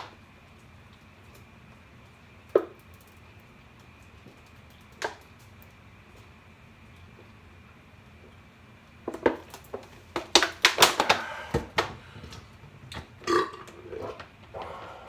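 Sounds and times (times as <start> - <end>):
man burping: 13.2 - 13.7.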